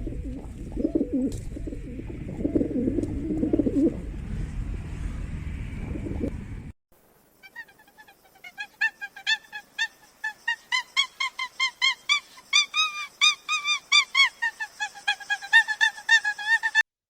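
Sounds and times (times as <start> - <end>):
geese honking: 0.8 - 6.4.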